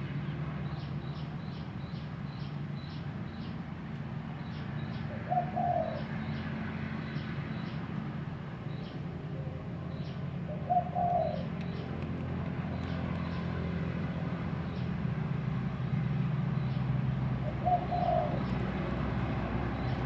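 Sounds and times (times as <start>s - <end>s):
dove cooing: 5.1s - 6.1s, 10.5s - 11.6s, 17.4s - 18.8s.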